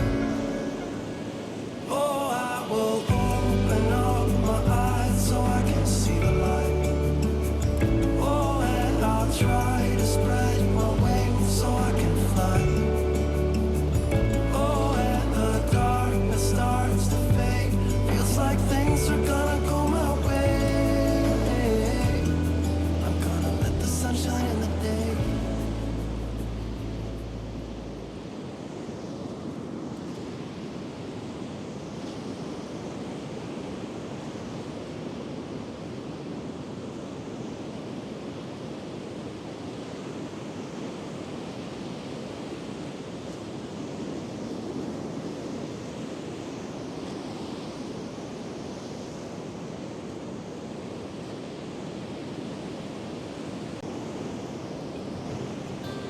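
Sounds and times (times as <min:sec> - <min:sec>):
waves breaking on a beach: 0:00.0 - 0:56.0
wind: 0:00.0 - 0:56.0.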